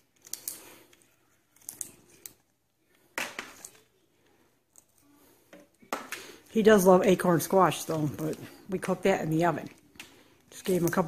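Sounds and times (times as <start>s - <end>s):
parrot beak clicking and scraping: 0.0s - 2.5s.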